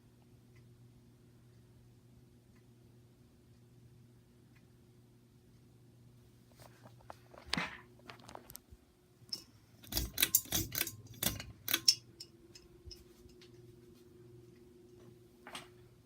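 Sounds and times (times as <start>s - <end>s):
ceiling fan motor humming: 0.0s - 16.0s
sharp clicks and rattles: 9.3s - 13.4s.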